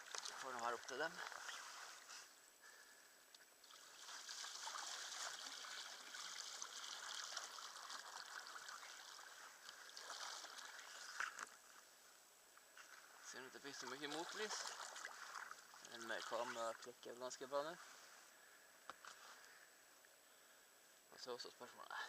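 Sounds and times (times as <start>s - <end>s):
water trickling and splashing: 0.0s - 2.2s, 3.5s - 11.7s, 12.8s - 17.5s.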